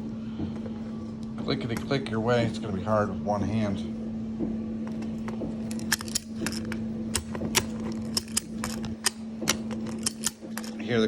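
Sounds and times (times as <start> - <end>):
steady low hum: 0.0 - 11.0
ratchet strap clicking: 5.7 - 10.8.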